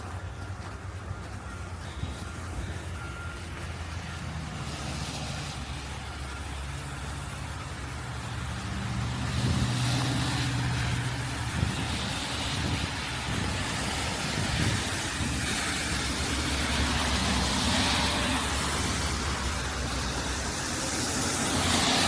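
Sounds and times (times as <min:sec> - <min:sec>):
tyre and road noise: 0:00.0 - 0:22.0
vehicle engine running: 0:00.0 - 0:22.0.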